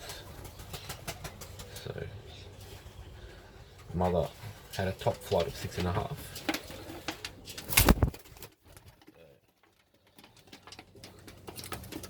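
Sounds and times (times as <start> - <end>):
pigeons cooing: 0.0 - 8.1.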